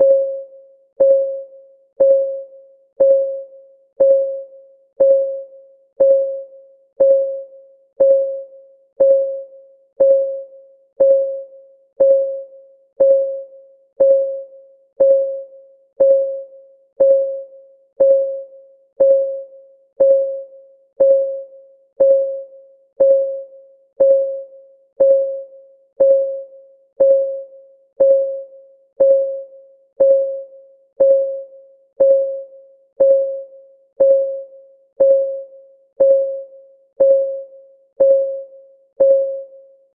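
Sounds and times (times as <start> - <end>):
timer ticking: 3.0 - 3.4, 4.0 - 4.4, 5.0 - 5.4, 6.0 - 6.4, 7.0 - 7.4, 8.0 - 8.4, 9.0 - 9.4, 10.0 - 10.4, 11.0 - 11.4, 12.0 - 12.4, 13.0 - 13.4, 14.0 - 14.4, 15.0 - 15.4, 16.0 - 16.4, 17.0 - 17.4, 18.0 - 18.4, 19.0 - 19.4, 20.0 - 20.4, 21.0 - 21.4, 22.0 - 22.4, 23.0 - 23.4, 24.0 - 24.4, 25.0 - 25.4, 26.0 - 26.4, 27.0 - 27.4, 28.0 - 28.4, 29.0 - 29.4, 30.0 - 30.4, 31.0 - 31.4, 32.0 - 32.4, 33.0 - 33.4, 34.0 - 34.4, 35.0 - 35.4, 36.0 - 36.4, 37.0 - 37.4, 38.0 - 38.4, 39.0 - 39.4.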